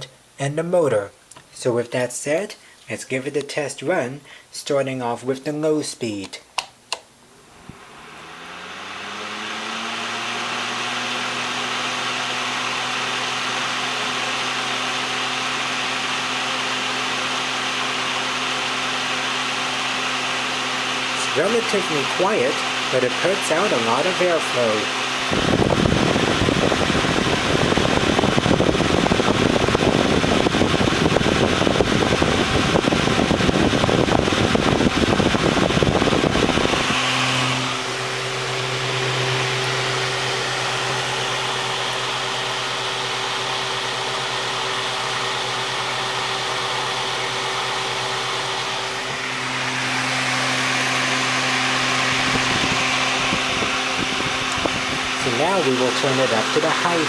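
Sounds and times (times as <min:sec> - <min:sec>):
electric fan running: 0:05.9 - 0:57.0
loud rough rumble: 0:32.3 - 0:43.4.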